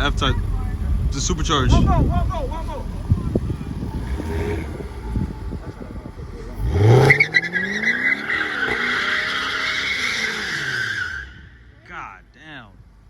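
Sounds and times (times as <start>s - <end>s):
car engine revving: 0.0s - 11.8s
tyres squealing: 6.3s - 11.6s.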